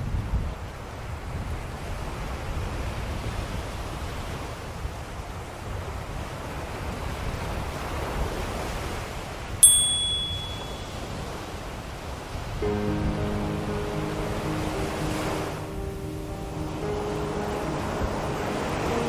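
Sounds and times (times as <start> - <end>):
ocean waves washing: 0.8 - 19.0
small high-pitched bell ringing: 9.6 - 11.2.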